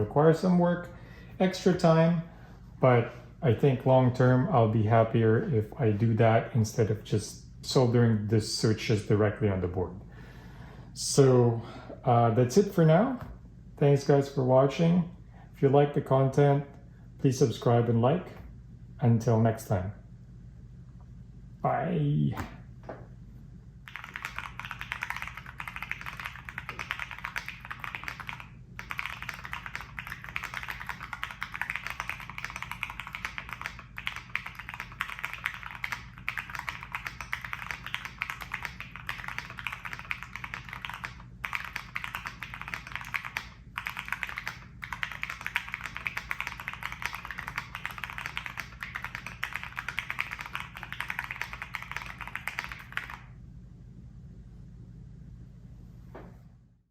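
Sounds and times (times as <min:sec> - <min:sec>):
fast mechanical keyboard typing: 0:23.8 - 0:53.3.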